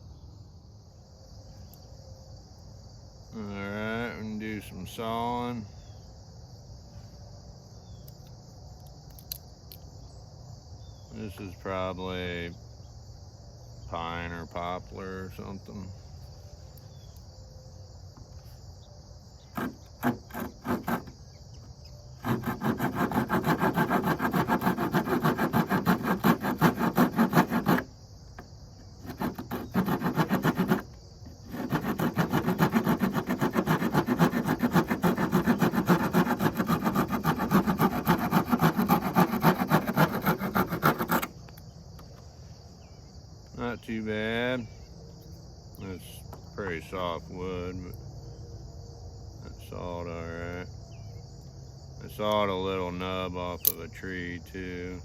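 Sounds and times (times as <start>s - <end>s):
crickets chirping: 0.0s - 55.0s
saw cutting wood: 19.4s - 41.4s.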